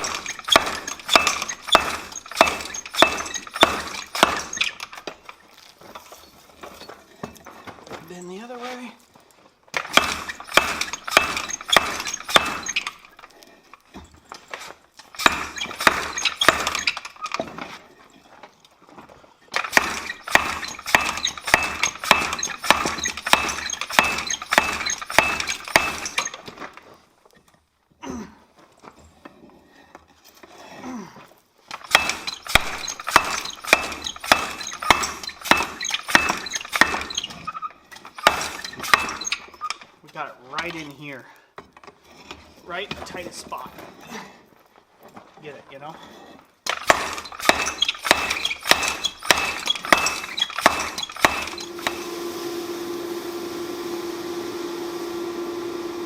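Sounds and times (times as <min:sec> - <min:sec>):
hammer striking steel: 0:00.0 - 0:04.6, 0:09.9 - 0:12.8, 0:19.6 - 0:26.3, 0:31.9 - 0:37.3, 0:38.2 - 0:39.3, 0:46.7 - 0:52.1.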